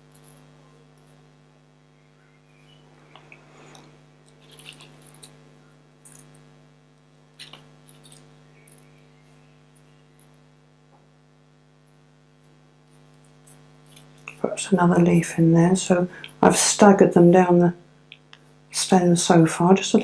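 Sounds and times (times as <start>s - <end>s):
steady low hum: 0.0s - 20.0s
tape wrapping rustles and ticks: 3.1s - 5.4s, 7.4s - 8.9s, 12.9s - 14.5s.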